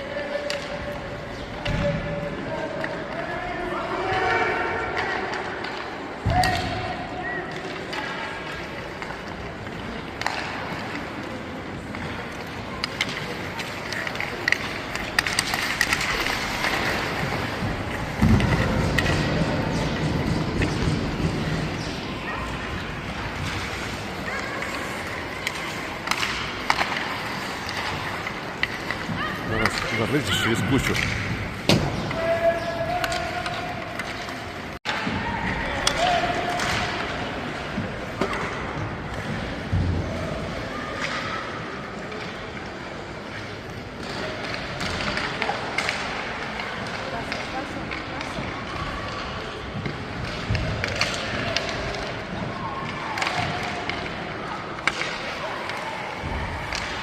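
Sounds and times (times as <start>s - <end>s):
sticks and puck clacking: 0.0s - 3.4s, 4.0s - 57.0s
spectators' voices: 0.0s - 57.0s
skates scraping on ice: 8.5s - 34.8s.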